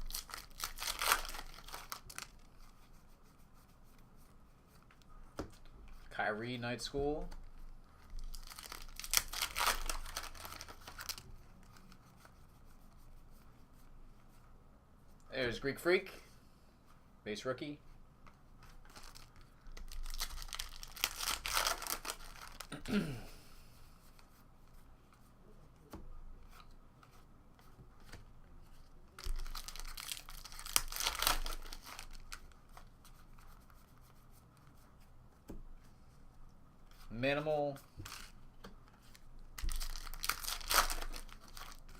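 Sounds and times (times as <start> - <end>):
foil wrapper crinkling and tearing: 0.0 - 2.5, 8.2 - 11.2, 18.9 - 22.8, 29.2 - 32.6, 39.6 - 41.9
cards rustling: 0.0 - 2.6, 7.2 - 12.0, 18.3 - 22.8, 28.0 - 33.8, 37.9 - 41.9.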